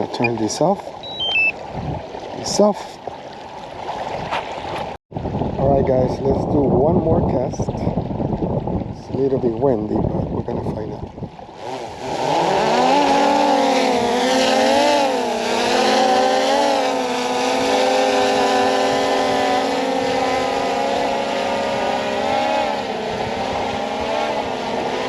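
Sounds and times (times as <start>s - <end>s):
drone propellers whining: 1.0s - 1.5s.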